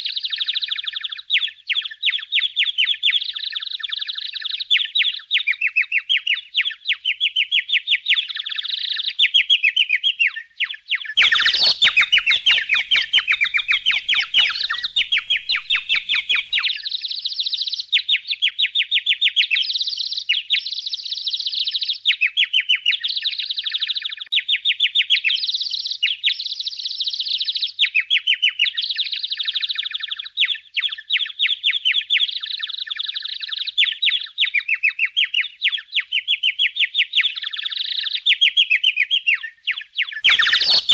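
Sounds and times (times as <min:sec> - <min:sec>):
budgerigars chattering: 0:10.6 - 0:17.1, 0:39.4 - 0:40.9.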